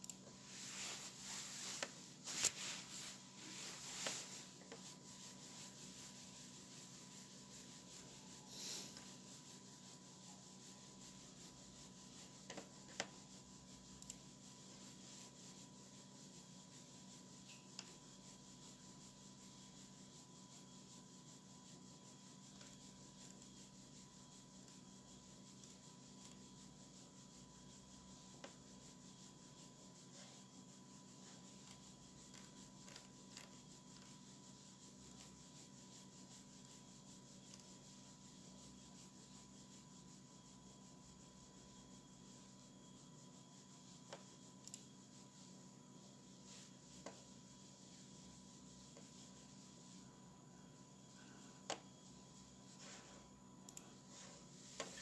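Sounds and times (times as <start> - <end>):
faint steady hum: 0.0 - 55.0
rubbing or scraping noises: 0.2 - 41.7.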